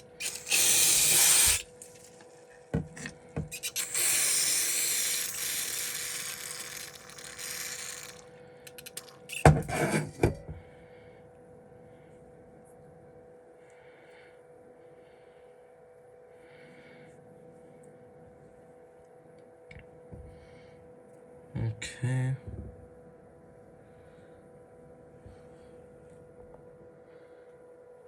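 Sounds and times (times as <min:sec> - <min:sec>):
pressurised gas hissing: 0:00.0 - 0:02.0, 0:03.4 - 0:10.0
faint steady hum: 0:00.0 - 0:28.0.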